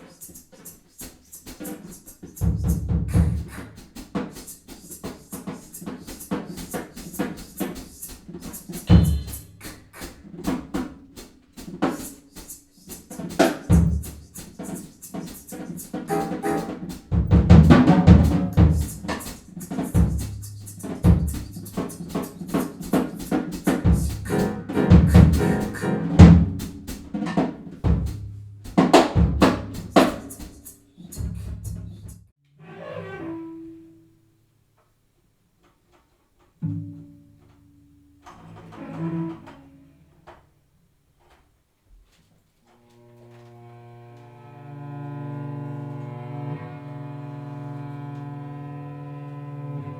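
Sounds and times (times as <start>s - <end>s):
drum kit playing irregular strikes: 0.0s - 32.3s.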